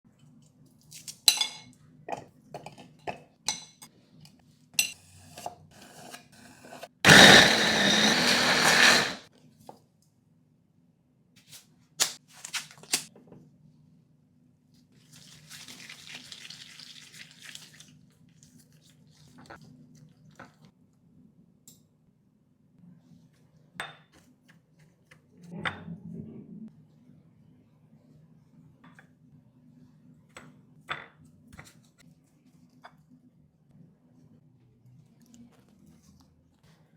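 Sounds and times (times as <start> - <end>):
electric blender running: 7.0 - 9.3.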